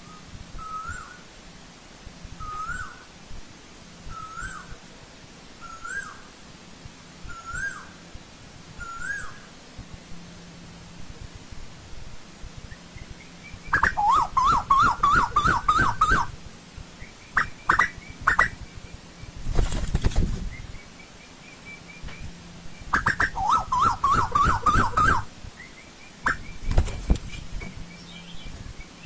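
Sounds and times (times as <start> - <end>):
bird calling repeated notes: 0.0 - 1.3, 2.4 - 3.1, 4.1 - 4.8, 7.3 - 8.0, 8.8 - 9.5, 12.7 - 16.4, 17.0 - 19.4, 20.4 - 29.0.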